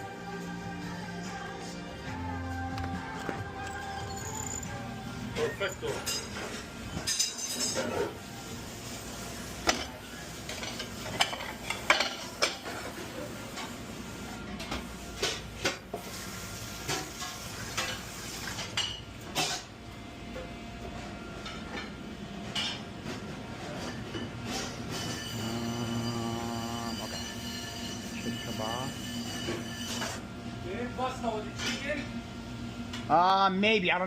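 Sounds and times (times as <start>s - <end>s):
dishes and cutlery clinking: 5.4s - 8.2s, 9.6s - 13.6s
kitchen noise hiss: 8.3s - 19.6s.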